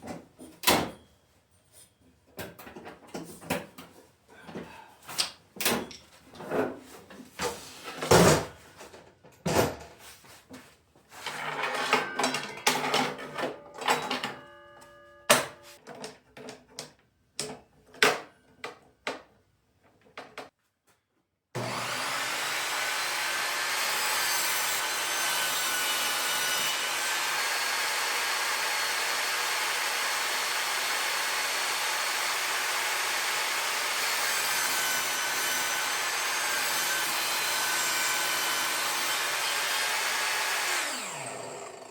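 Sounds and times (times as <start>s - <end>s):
parts and packaging clattering: 11.1s - 17.0s
power tool whirring: 21.6s - 41.9s.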